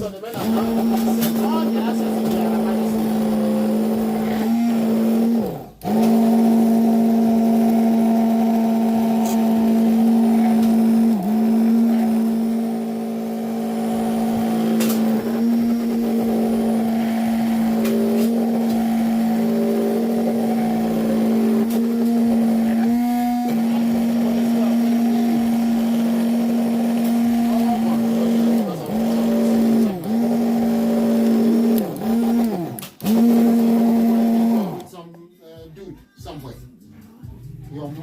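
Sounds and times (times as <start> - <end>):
kitchen mixer motor humming: 0.0 - 35.0.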